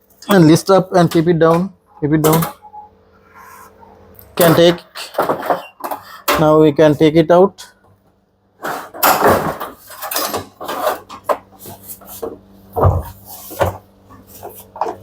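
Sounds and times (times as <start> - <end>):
washing machine drum knocking and scraping: 8.7 - 15.0.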